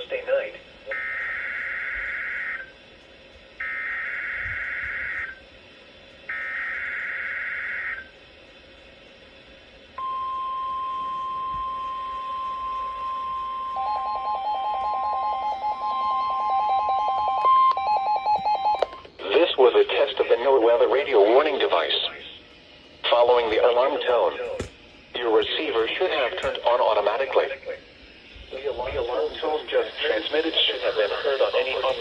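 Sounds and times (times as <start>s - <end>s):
steady warning alarm tone: 0.0s - 8.4s, 9.8s - 32.0s
lower tone pulsing rapidly: 10.0s - 32.0s
digital header data bursts: 28.5s - 32.0s.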